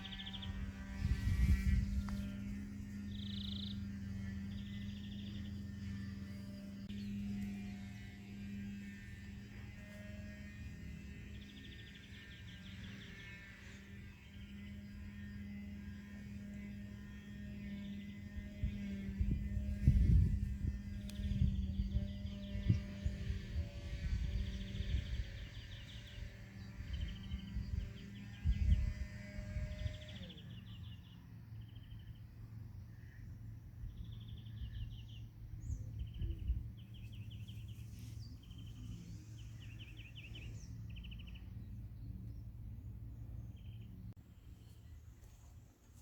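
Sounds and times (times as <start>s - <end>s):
steady hum with tones: 0.0s - 46.0s.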